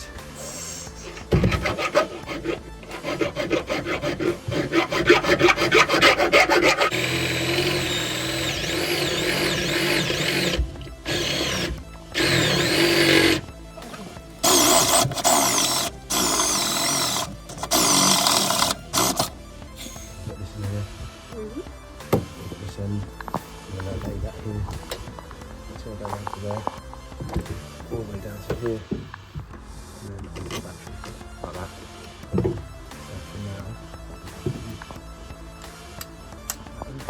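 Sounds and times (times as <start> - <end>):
metal grinding: 0.0 - 21.4
tool rasping on sheet metal: 0.4 - 20.0.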